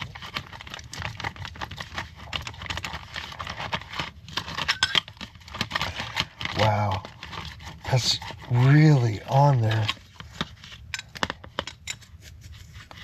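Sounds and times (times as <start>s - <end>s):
metal parts clicking and rattling: 4.4s - 6.5s, 9.3s - 12.2s.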